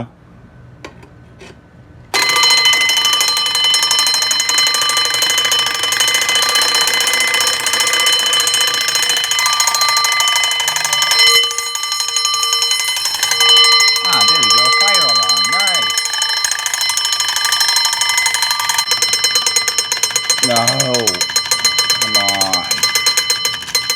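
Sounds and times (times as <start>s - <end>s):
harsh alarm buzzing: 2.2s - 23.9s.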